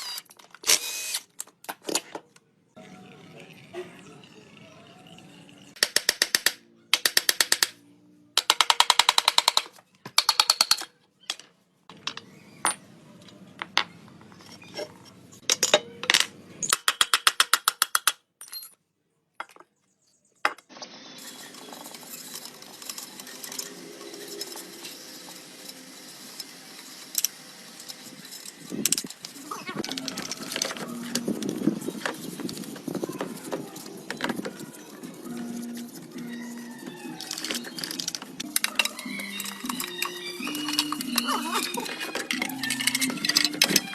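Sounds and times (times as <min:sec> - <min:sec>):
socket ratchet clicking: 0:05.8 - 0:07.8.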